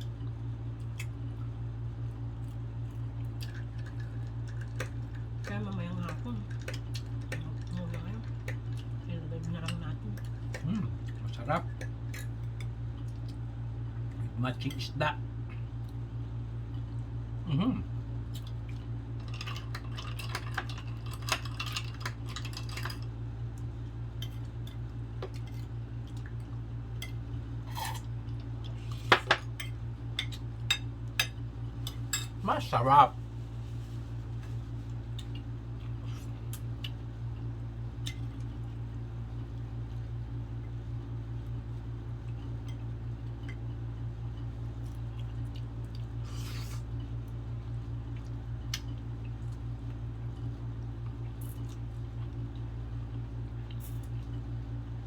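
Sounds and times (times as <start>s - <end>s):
steady low hum: 0.0s - 55.0s
squishy eating mouth noises: 45.0s - 47.2s.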